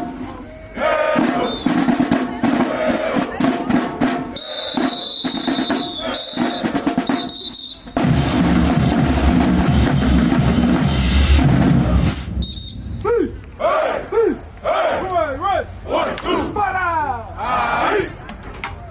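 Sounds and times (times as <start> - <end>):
bass and snare drum roll: 1.0 - 12.7.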